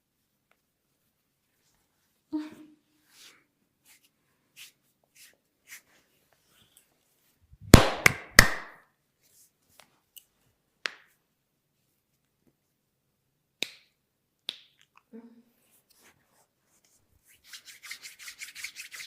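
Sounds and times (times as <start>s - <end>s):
loud sharp hand smacks: 7.6s - 8.8s.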